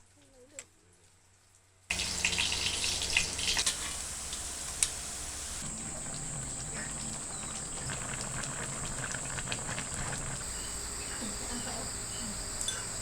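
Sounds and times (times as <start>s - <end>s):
insects droning high-pitched: 1.9s - 8.3s, 10.4s - 13.0s.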